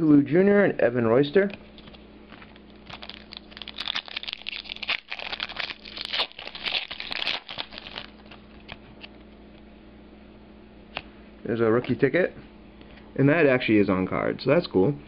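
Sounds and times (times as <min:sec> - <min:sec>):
card pack wrapper crinkling and tearing: 0:01.8 - 0:08.8.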